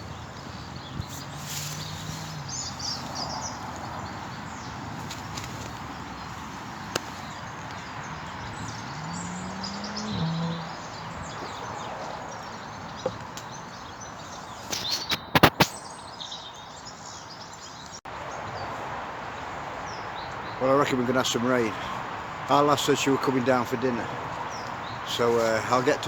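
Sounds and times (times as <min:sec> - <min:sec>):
wind blowing: 0:00.0 - 0:16.1
small birds chirping: 0:00.0 - 0:26.0
short rising hum: 0:08.6 - 0:11.6.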